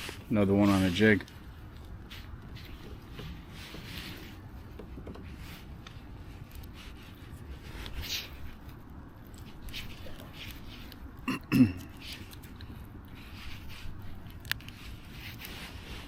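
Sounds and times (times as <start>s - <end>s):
faint background noise: 0.0s - 16.0s
person clearing throat: 11.2s - 12.0s.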